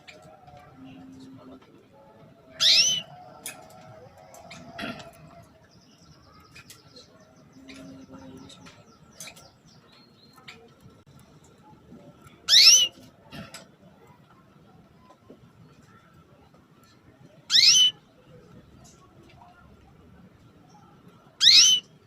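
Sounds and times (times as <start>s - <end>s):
canary rising call: 2.6s - 3.1s
faint chirps and ticks: 3.1s - 17.4s.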